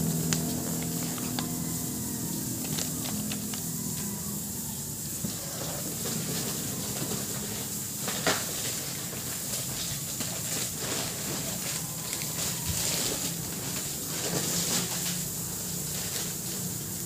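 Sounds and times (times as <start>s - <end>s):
packaging rustling and crinkling: 0.0s - 4.2s, 5.2s - 17.0s
steady hiss: 0.0s - 17.0s.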